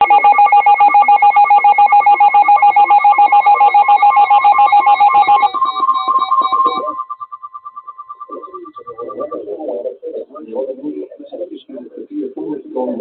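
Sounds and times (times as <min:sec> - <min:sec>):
electronic alarm trill: 0:00.0 - 0:09.9
high pulsed alarm tone: 0:00.0 - 0:09.9.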